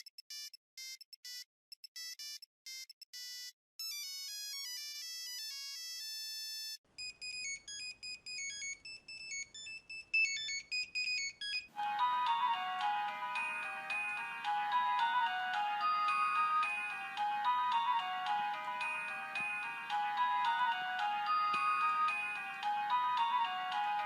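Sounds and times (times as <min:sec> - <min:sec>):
short electronic ringtone beeps: 0:06.4 - 0:11.7
polyphonic ringtone melody: 0:11.7 - 0:24.0
single-note ringtone melody: 0:11.8 - 0:24.0.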